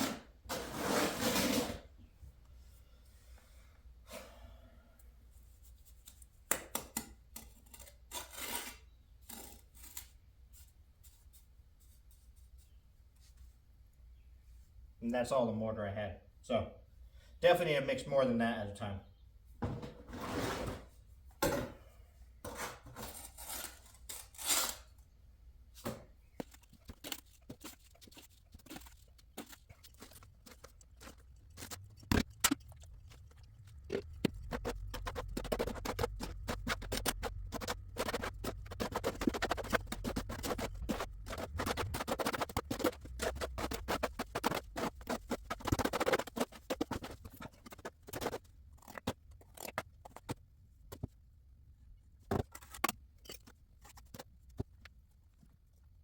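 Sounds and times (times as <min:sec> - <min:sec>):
masonry tools scraping mortar: 0:00.0 - 0:01.9, 0:07.4 - 0:10.1, 0:26.4 - 0:50.4.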